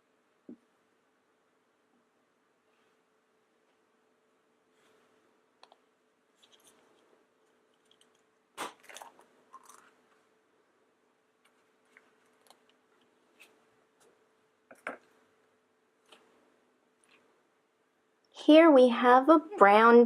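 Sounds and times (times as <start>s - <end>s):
plastic egg crinkling and crackling: 7.7s - 10.1s.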